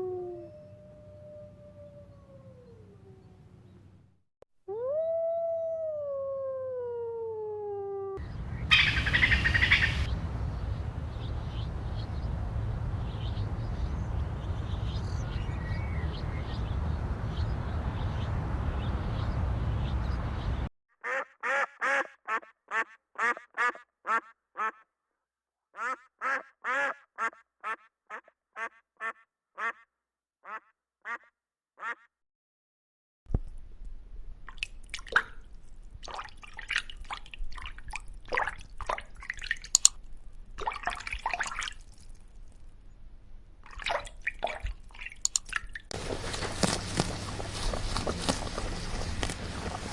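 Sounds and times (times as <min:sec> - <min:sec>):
duck quacking: 0:08.2 - 0:12.1, 0:21.0 - 0:24.8, 0:25.8 - 0:29.8, 0:30.4 - 0:32.1
faint calls: 0:08.2 - 0:20.7, 0:45.9 - 0:49.9
rumbling outdoor noise: 0:08.2 - 0:20.7, 0:45.9 - 0:49.9.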